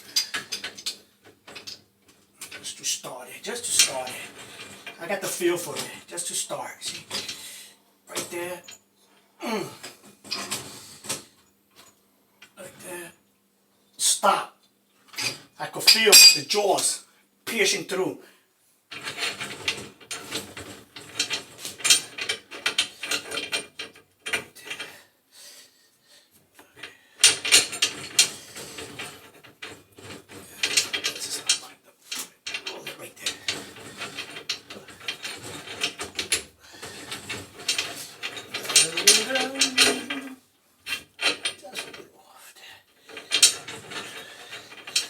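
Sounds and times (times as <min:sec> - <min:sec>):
wrench scraping metal fitting: 0:33.4 - 0:40.4.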